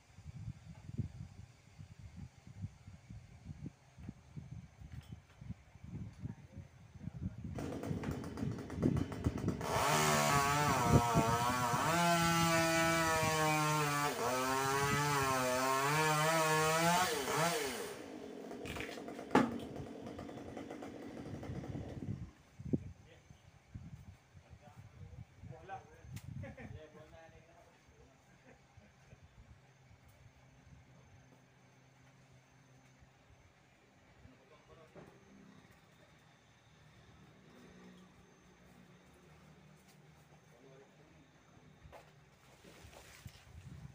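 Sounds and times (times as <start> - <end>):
chainsaw running at high revs: 7.5 - 22.4.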